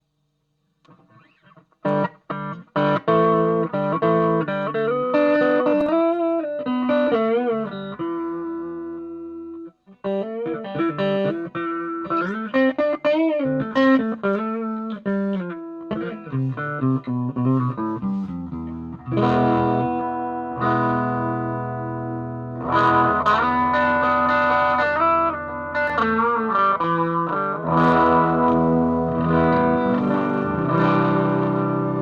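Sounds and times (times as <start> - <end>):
electric guitar through an amp: 0.9 - 32.0.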